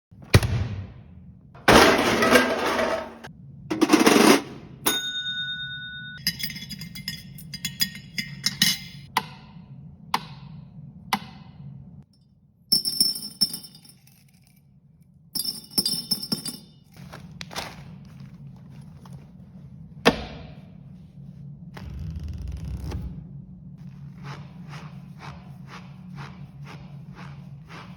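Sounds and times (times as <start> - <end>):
low steady hum: 0.4 - 27.9
steady ringing tone: 4.9 - 8.4.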